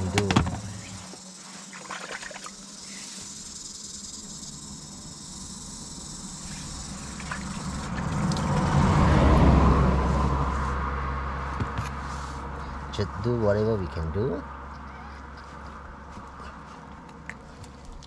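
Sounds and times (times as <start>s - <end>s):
insects chirring: 0.0s - 9.7s
vehicle passing on road: 6.5s - 17.9s.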